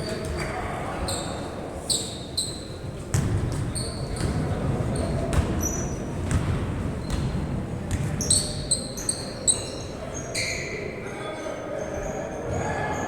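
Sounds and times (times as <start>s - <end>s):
ball bouncing on a court: 3.1s - 4.5s, 5.2s - 8.4s.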